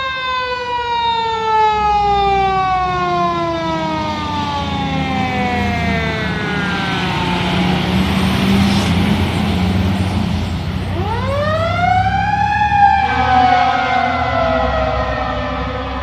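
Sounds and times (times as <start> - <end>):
fire engine siren: 0.0 - 16.0
engine rumble: 1.9 - 16.0.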